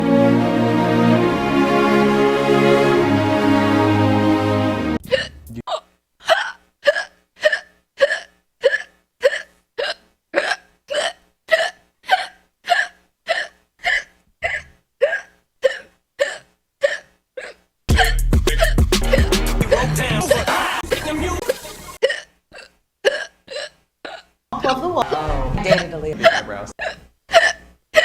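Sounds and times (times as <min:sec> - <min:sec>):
loud music: 0:00.0 - 0:05.6, 0:17.9 - 0:22.0
person hiccupping: 0:05.0 - 0:20.8, 0:22.0 - 0:24.4, 0:26.8 - 0:28.0.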